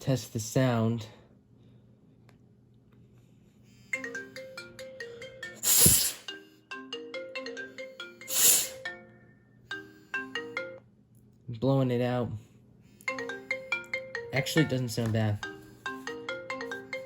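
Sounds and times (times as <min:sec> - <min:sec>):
marimba ringtone from phone speaker: 0:03.9 - 0:10.9, 0:13.0 - 0:17.0
rushing air noise bursts: 0:05.6 - 0:06.3, 0:08.3 - 0:08.8.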